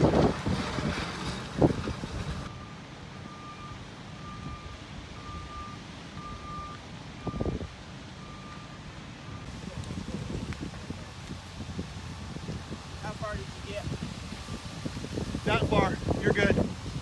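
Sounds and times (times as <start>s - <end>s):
loud bumps: 0.0s - 2.5s
vehicle reversing alarm beeping: 1.4s - 9.6s.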